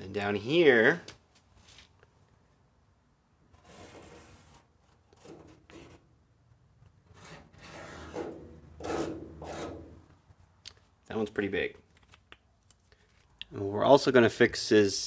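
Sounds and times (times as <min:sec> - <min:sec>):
rubbing and scuffing: 0:01.3 - 0:02.0, 0:07.1 - 0:10.0.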